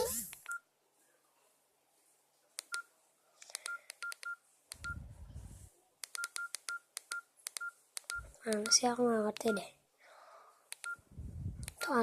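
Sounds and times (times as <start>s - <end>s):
phone keypad clicks and beeps: 0.3s - 0.6s, 2.6s - 2.9s, 3.5s - 5.0s, 6.0s - 9.7s, 10.7s - 11.0s.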